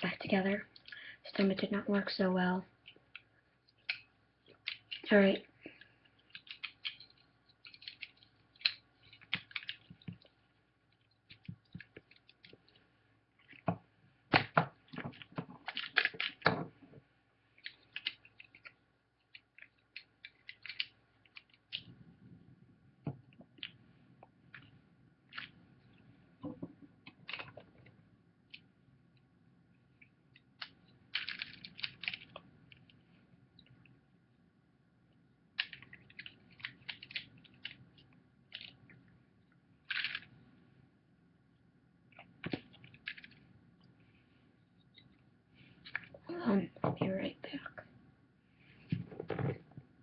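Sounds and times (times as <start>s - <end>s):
plastic puzzle cube pieces clicking: 6.3s - 10.2s, 14.3s - 16.6s, 17.7s - 18.8s, 19.4s - 21.9s, 30.4s - 32.4s, 35.6s - 37.8s, 39.9s - 40.3s.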